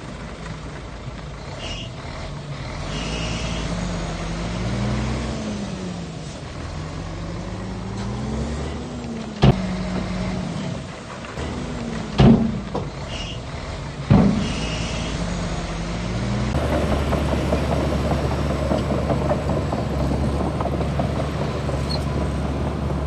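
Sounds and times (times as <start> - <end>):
bulldozer diesel engine working: 0.0 - 23.0
high squeak: 13.1 - 13.4.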